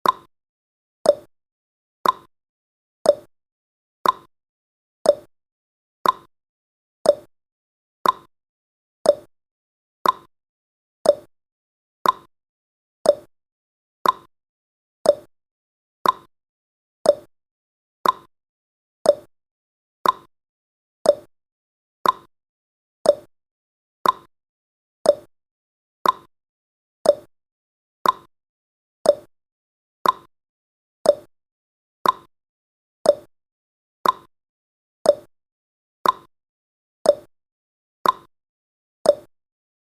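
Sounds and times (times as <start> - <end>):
clock ticking: 2.0 - 2.3, 4.0 - 4.3, 6.0 - 6.3, 8.0 - 8.3, 10.0 - 10.3, 12.0 - 12.3, 14.0 - 14.3, 15.1 - 15.3, 16.0 - 16.3, 18.0 - 18.3, 20.0 - 20.3, 22.0 - 22.3, 24.0 - 24.3, 25.1 - 25.3, 26.0 - 26.3, 27.1 - 27.3, 28.0 - 28.3, 29.1 - 29.3, 30.0 - 30.3, 32.0 - 32.3, 33.1 - 33.3, 34.0 - 34.3, 36.0 - 36.3, 38.0 - 38.3.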